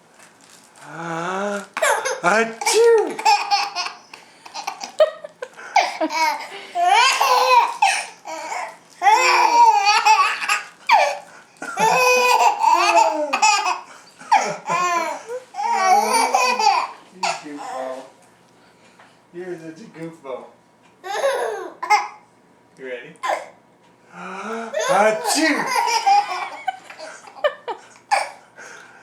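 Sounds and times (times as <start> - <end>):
pretend sneeze: 1.8 - 3.2
baby laughing: 1.8 - 17.9, 21.0 - 22.2, 24.7 - 28.4.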